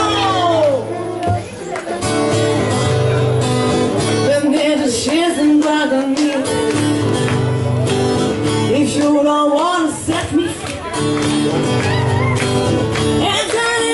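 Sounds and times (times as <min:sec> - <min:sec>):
strummed acoustic guitar: 0:00.0 - 0:13.9
person singing: 0:04.1 - 0:06.7, 0:13.2 - 0:13.9.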